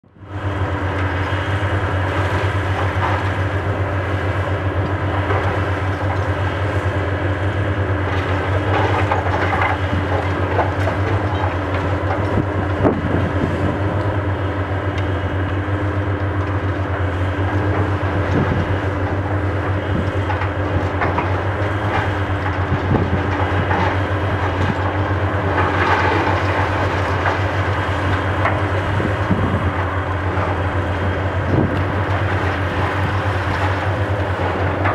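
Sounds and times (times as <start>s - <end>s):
excavator diesel engine running: 0.0s - 34.9s
concrete debris knocking and clattering: 8.2s - 13.1s, 17.3s - 34.9s.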